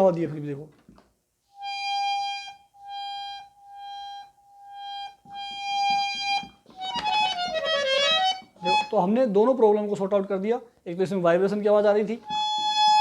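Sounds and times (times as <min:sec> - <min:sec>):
harmonium high note: 0:01.5 - 0:09.1, 0:12.2 - 0:13.0.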